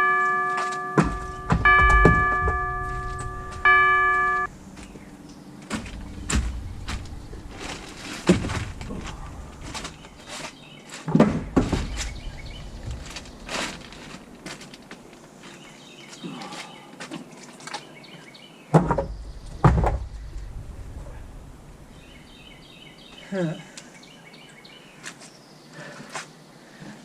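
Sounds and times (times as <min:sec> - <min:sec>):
footsteps: 0:00.2 - 0:15.8
knocks and thuds from handling: 0:01.0 - 0:03.7, 0:05.7 - 0:10.4, 0:11.1 - 0:14.6
heavy thumps: 0:01.0 - 0:10.4, 0:11.1 - 0:14.6.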